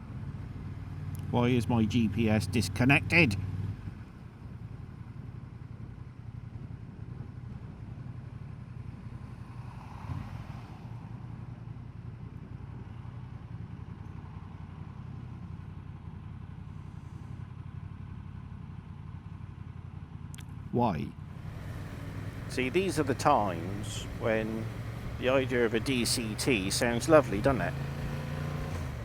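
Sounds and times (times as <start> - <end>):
motorcycle engine running at low revs: 0.0 - 9.4, 21.2 - 29.0.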